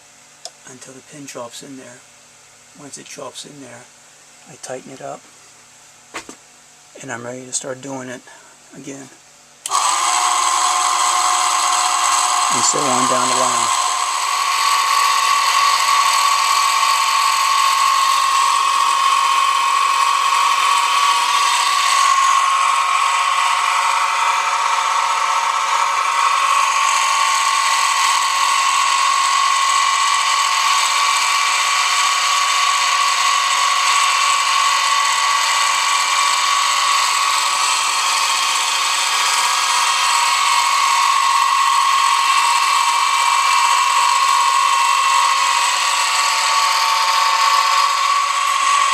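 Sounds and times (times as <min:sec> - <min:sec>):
milling machine whining: 0:09.6 - 0:48.9.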